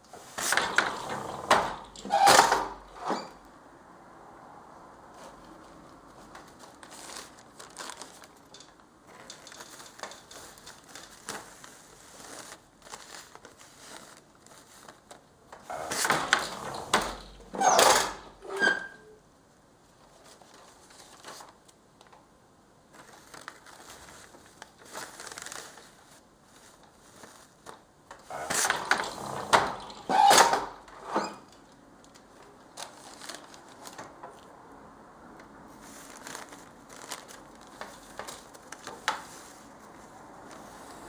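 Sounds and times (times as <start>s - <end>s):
paper crinkling and rustling: 5.1s - 17.6s, 20.1s - 22.2s, 22.8s - 30.1s, 30.7s - 34.5s, 35.4s - 41.0s
loud paper crunches: 6.5s - 8.4s, 22.9s - 26.1s, 32.7s - 34.0s, 35.8s - 41.0s.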